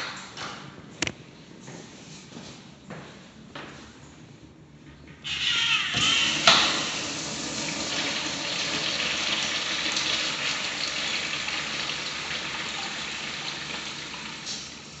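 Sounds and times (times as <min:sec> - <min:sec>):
toilet flush rush of water: 0:06.0 - 0:15.0.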